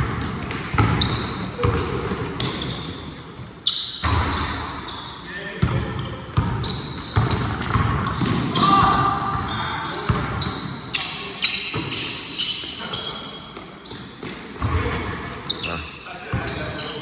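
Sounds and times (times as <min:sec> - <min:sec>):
basketball bouncing on gym floor: 0:00.0 - 0:02.9, 0:05.6 - 0:10.5
sneakers squeaking on court: 0:00.0 - 0:17.0.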